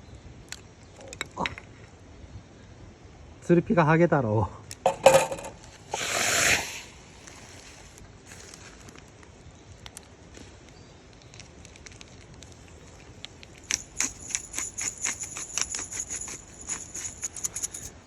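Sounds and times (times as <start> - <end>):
food sizzling over charcoal: 5.8 - 11.4.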